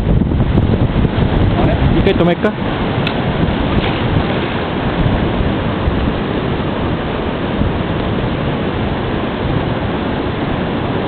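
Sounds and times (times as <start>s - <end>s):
stream rushing over rocks: 0.0s - 11.0s.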